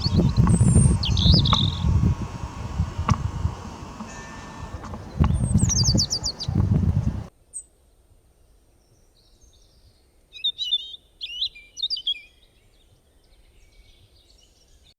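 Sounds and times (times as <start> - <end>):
small birds chirping: 0.0 - 7.3.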